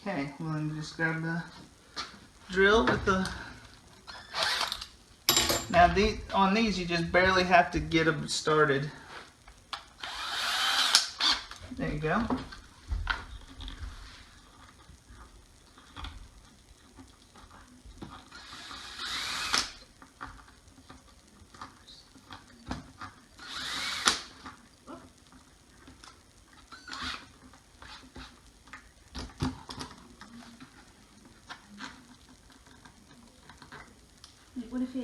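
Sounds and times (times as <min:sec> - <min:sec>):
power drill spinning up: 0:04.1 - 0:04.9, 0:10.0 - 0:11.5, 0:18.3 - 0:19.8, 0:23.4 - 0:24.3, 0:26.7 - 0:27.2.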